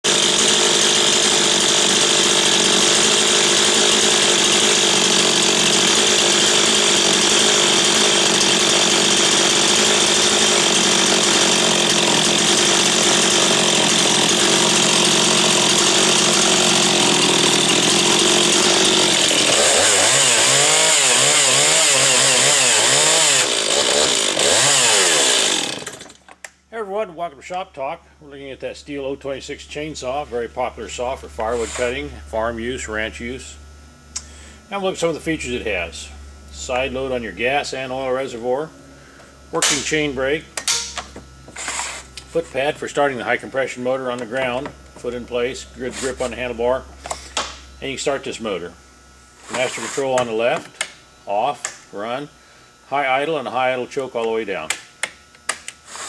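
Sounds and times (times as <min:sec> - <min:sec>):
chainsaw revving: 0:00.0 - 0:26.2, 0:31.4 - 0:32.1, 0:40.8 - 0:43.5, 0:45.5 - 0:48.4, 0:49.4 - 0:50.4.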